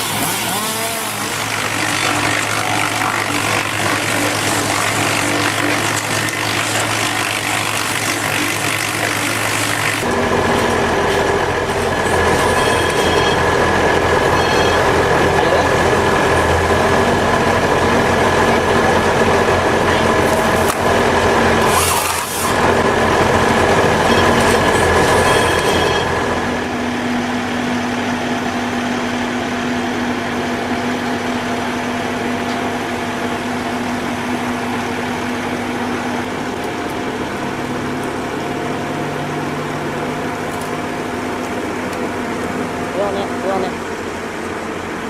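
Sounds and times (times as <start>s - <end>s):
machinery humming: 0.0s - 45.0s
held machine tones: 11.8s - 13.6s, 23.9s - 26.3s.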